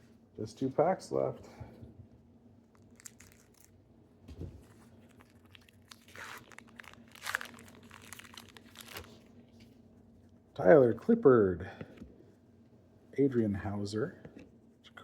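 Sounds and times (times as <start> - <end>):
wrapper tearing and crinkling: 2.7 - 3.8, 4.7 - 9.3.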